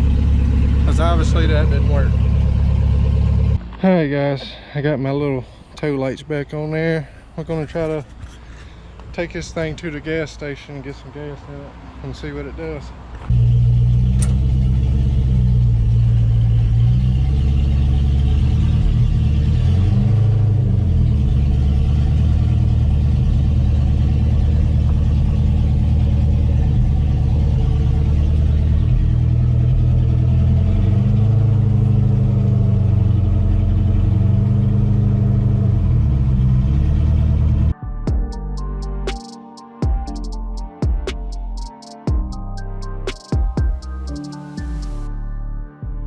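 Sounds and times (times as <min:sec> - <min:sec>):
engine revving while driving: 0:00.0 - 0:03.6, 0:13.2 - 0:37.7.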